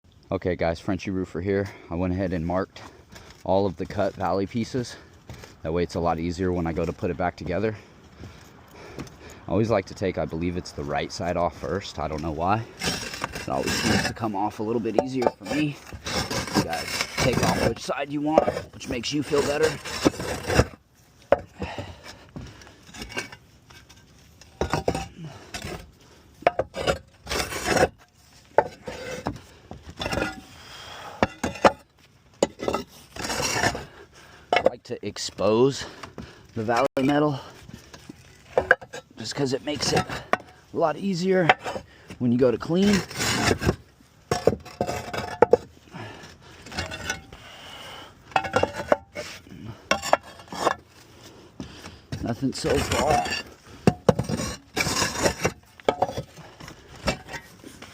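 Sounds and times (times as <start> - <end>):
tiles scraping: 12.7 - 20.8, 22.9 - 28.0, 32.5 - 33.9, 42.8 - 45.7, 52.4 - 57.9
roof tiles clacking together: 42.8 - 47.5, 48.2 - 50.8, 52.2 - 57.9.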